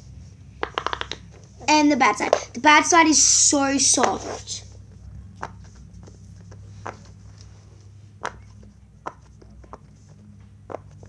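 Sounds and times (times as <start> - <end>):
steady low hum: 0.0 - 11.0
fidget toy clicks and taps: 0.6 - 2.6.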